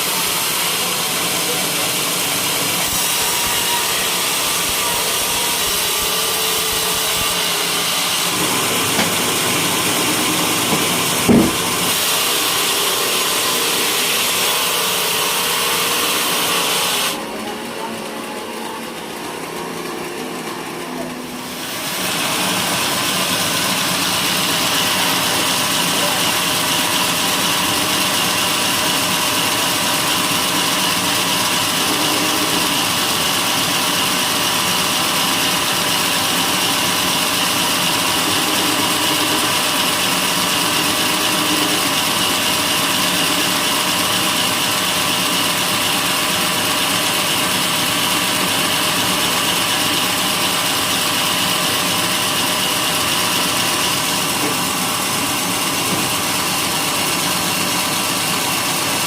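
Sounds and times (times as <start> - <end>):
motor running: 0.0 - 59.0
sawmill blade cutting wood: 0.0 - 59.0.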